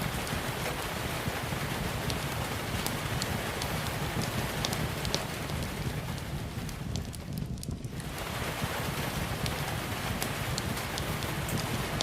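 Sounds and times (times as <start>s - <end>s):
fireplace crackling: 0.0s - 12.0s
steady rain: 0.0s - 12.0s
low rumble: 0.2s - 12.0s
sharp pops from fire: 1.8s - 8.1s, 8.9s - 12.0s.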